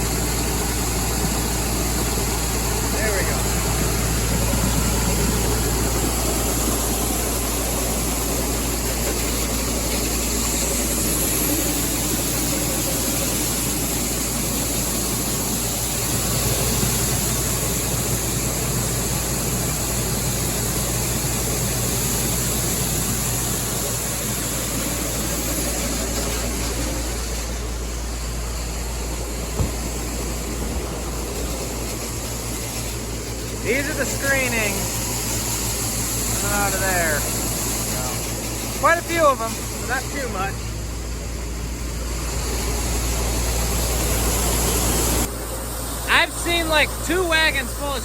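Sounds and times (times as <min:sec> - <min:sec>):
grain screener mechanical rush: 0:00.0 - 0:48.0
tractor engine running: 0:00.0 - 0:48.0
short knock: 0:29.6 - 0:30.0.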